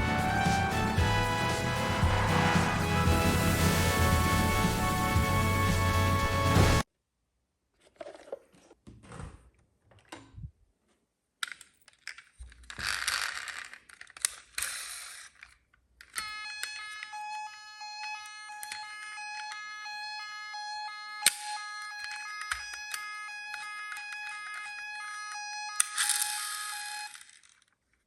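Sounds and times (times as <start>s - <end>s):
rattling hissing noise: 0.0s - 6.8s.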